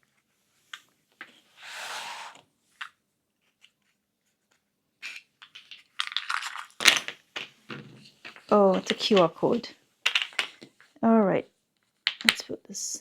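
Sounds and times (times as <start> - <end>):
wooden parts sliding scrape: 1.6 - 2.4
wooden puzzle parts clicking: 5.0 - 10.8, 12.0 - 12.5.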